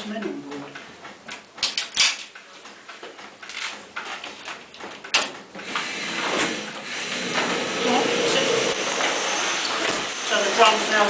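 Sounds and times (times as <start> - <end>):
steam hissing: 5.6 - 11.0.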